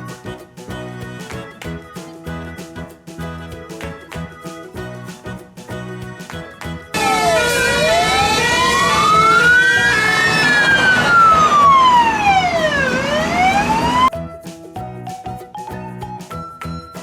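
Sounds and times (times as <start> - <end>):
children's music: 0.0 - 17.0
fire truck siren wailing: 7.0 - 14.1.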